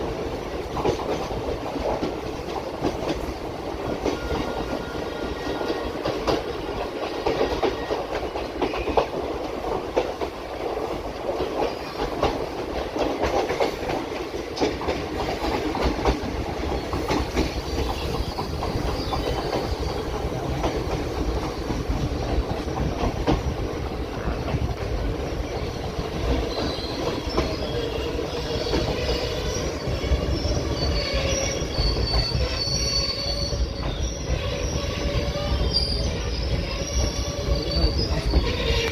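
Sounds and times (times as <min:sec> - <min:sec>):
train wheels clicking over rail joints: 0:00.0 - 0:38.9
wheels squealing on rails: 0:01.8 - 0:38.9.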